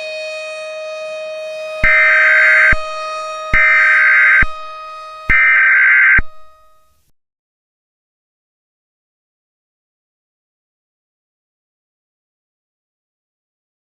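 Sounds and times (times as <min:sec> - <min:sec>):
steady low hum: 0:01.8 - 0:06.9.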